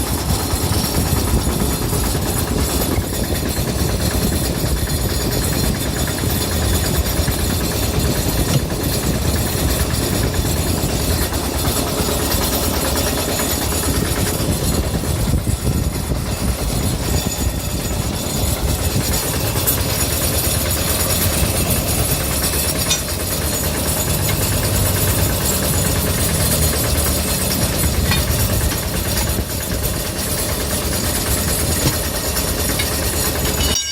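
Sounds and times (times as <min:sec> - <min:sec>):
engine rumbling: 0:00.0 - 0:33.9.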